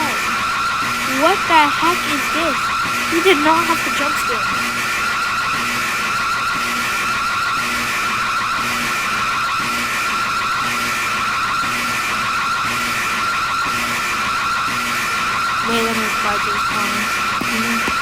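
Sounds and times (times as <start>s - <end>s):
high fluttering alarm tone: 1.1s - 4.7s.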